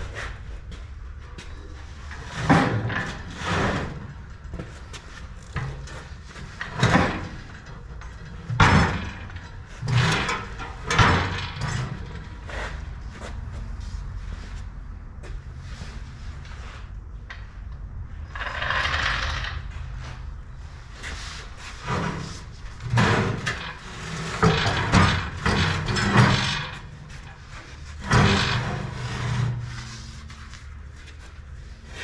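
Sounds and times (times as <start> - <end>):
steady low hum: 0.0 - 32.0
steel knocking and clanking: 5.5 - 12.6, 21.8 - 29.8.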